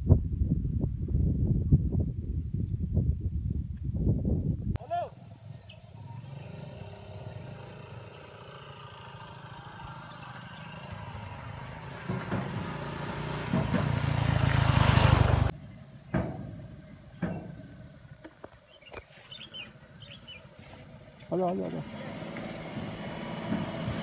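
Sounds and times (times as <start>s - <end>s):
vehicle engine running: 5.1s - 24.0s.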